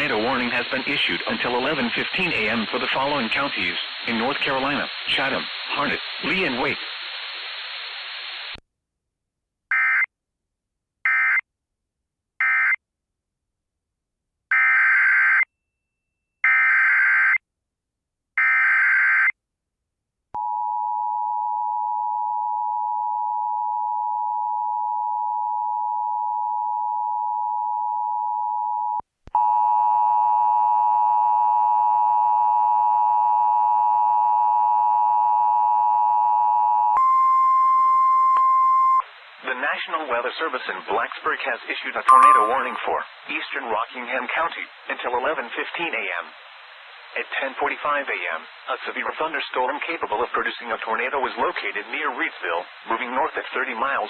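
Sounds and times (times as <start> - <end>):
two-tone attention signal: 42.1 - 43.0
harsh steady tone: 42.1 - 43.2.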